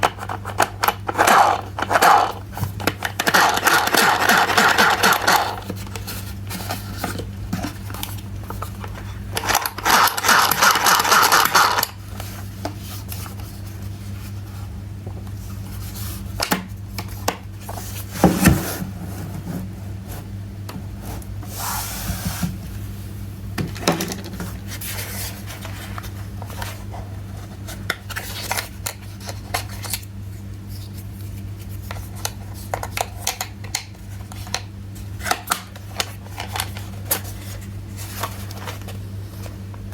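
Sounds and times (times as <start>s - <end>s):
plastic parts rubbing and scraping: 0.0s - 14.4s.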